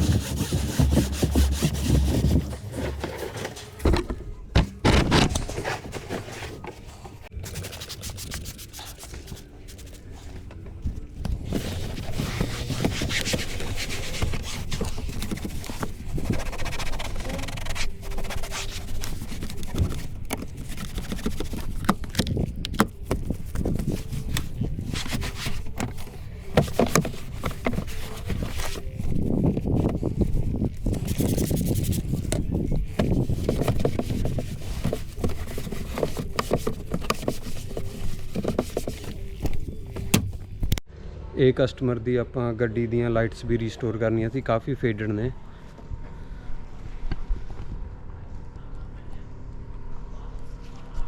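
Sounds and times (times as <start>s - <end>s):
hand scrubbing car surface: 0.0s - 10.1s, 11.3s - 40.8s.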